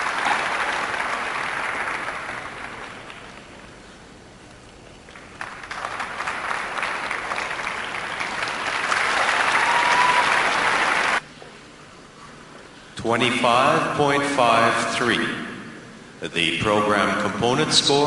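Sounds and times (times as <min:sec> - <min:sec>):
crowd applauding: 0:00.0 - 0:03.8, 0:04.8 - 0:11.2.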